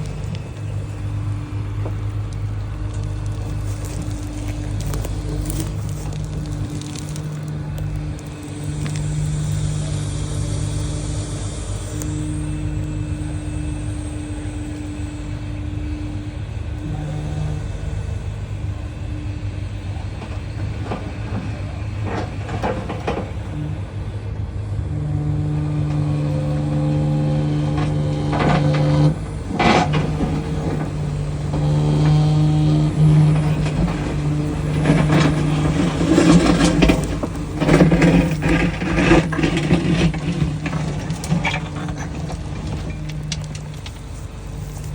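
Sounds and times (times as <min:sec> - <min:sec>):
excavator diesel engine running: 0:00.0 - 0:44.9
machine parts clanking: 0:27.5 - 0:44.9.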